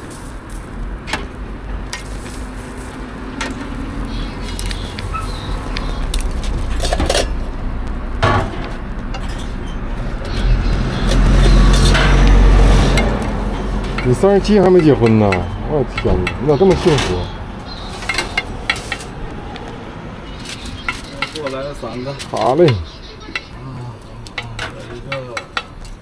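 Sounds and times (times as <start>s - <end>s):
sharp clicks and knocks: 10.2s - 17.2s.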